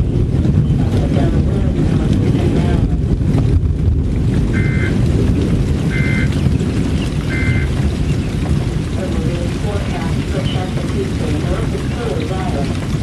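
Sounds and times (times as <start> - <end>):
loud low noise haze: 0.0 - 13.0
two-tone data bursts: 4.6 - 5.0, 5.9 - 6.3, 7.3 - 7.7.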